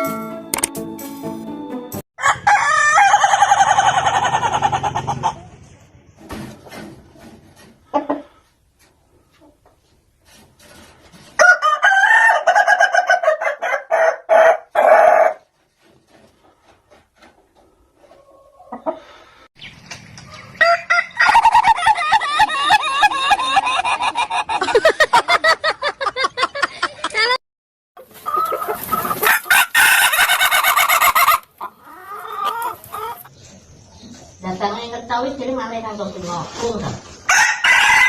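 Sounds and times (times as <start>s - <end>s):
rooster crowing in choppy notes: 2.2s - 5.0s, 11.4s - 15.4s, 29.2s - 31.4s, 37.3s - 38.0s.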